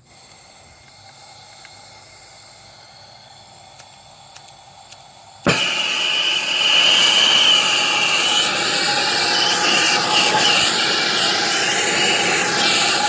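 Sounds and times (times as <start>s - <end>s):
gas torch flame hissing: 0.0s - 13.0s
gas torch clicks: 3.7s - 13.0s.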